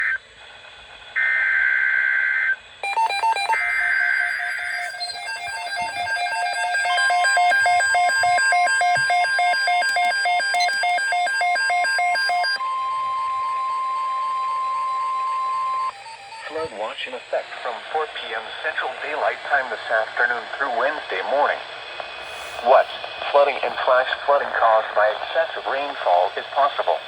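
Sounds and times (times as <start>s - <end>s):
steady alert tone: 2.8s - 12.6s
warbling data tones: 2.8s - 16.6s
pulsed electronic beeps: 2.8s - 16.7s.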